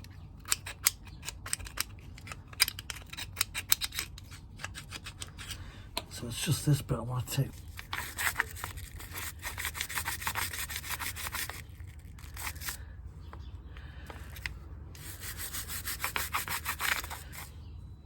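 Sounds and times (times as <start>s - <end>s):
brush scrubbing metal: 7.9s - 11.6s, 15.0s - 17.5s.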